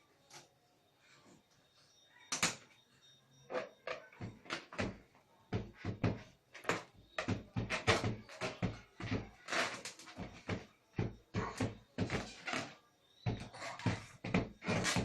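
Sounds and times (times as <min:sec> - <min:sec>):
knocks and bangs on household things: 0:03.9 - 0:15.0.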